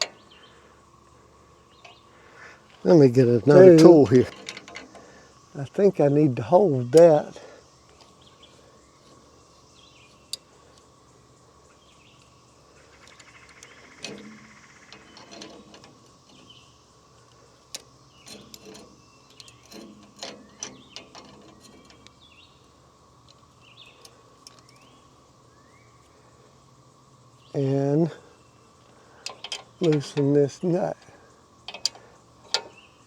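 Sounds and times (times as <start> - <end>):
metallic clinks of wrenches: 29.2 - 32.8.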